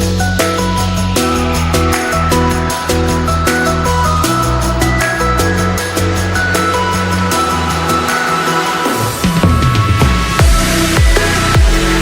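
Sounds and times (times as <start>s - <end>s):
electronic music with steady beat: 0.0s - 12.0s.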